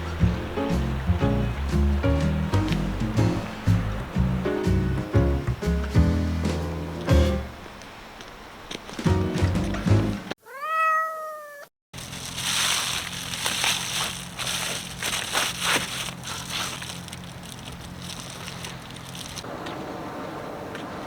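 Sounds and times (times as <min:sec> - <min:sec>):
cat meow: 0:10.4 - 0:11.7
crackling and rustling: 0:12.0 - 0:19.5.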